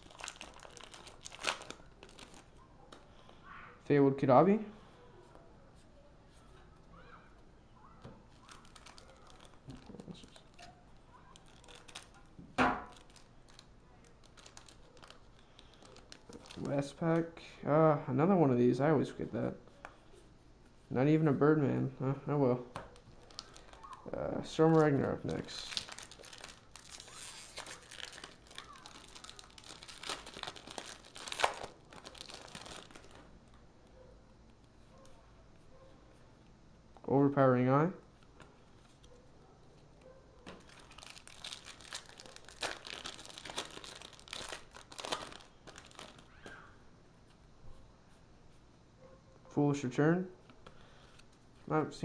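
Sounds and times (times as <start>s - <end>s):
foil wrapper tearing and crinkling: 0.0s - 2.6s, 8.3s - 10.7s, 11.3s - 17.0s, 22.9s - 24.0s, 24.6s - 33.3s, 40.5s - 46.3s.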